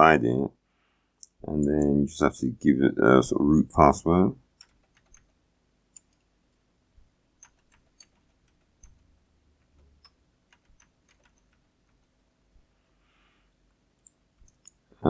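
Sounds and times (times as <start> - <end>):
keyboard keystrokes: 4.6 - 5.4, 7.4 - 12.1.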